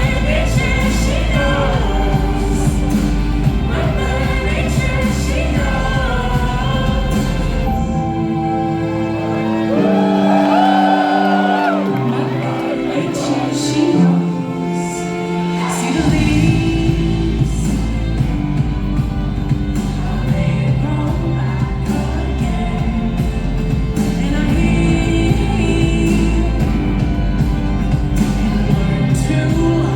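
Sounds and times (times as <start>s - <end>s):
woman singing with vibrato: 0.0s - 8.7s, 12.9s - 18.5s, 19.9s - 29.9s
pop band with bass and drums: 0.0s - 29.9s.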